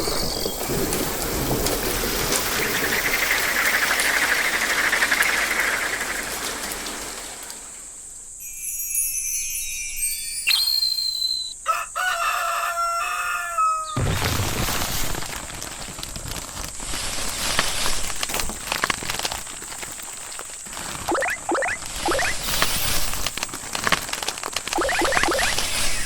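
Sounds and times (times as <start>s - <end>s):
animal-like gliding call: 21.1s - 23.1s, 24.8s - 26.0s.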